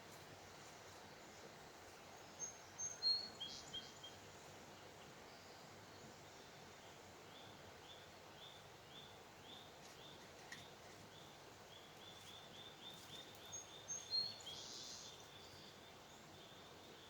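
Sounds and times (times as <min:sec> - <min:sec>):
low background hiss: 0:00.0 - 0:17.0
small bird chirping: 0:11.1 - 0:15.9.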